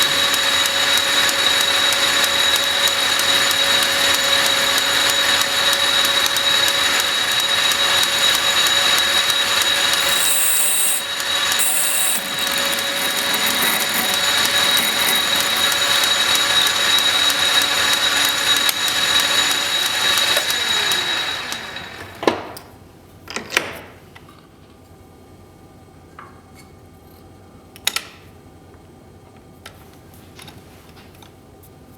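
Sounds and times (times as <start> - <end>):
metal lathe whining: 0.1 - 22.2.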